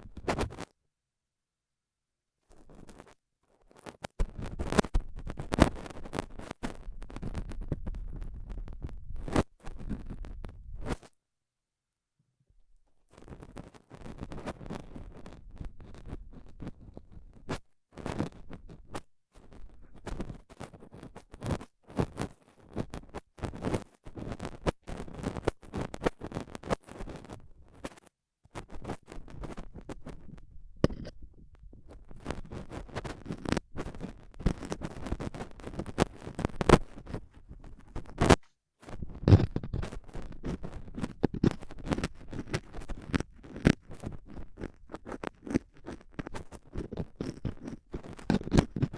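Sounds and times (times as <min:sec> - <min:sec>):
metal tool scraping microphone: 0:30.8 - 0:31.4, 0:39.0 - 0:48.9.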